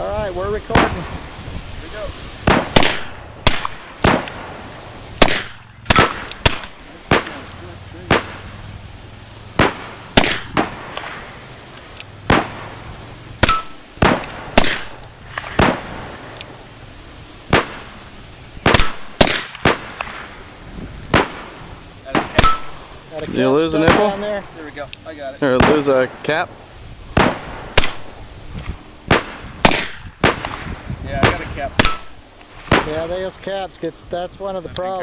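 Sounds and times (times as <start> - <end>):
pistol gunshots: 2.4 - 8.7, 9.5 - 11.4, 12.2 - 16.6, 17.5 - 17.9, 18.6 - 20.3, 21.1 - 22.8, 23.6 - 24.4, 25.5 - 26.1, 27.1 - 28.2, 29.1 - 33.0.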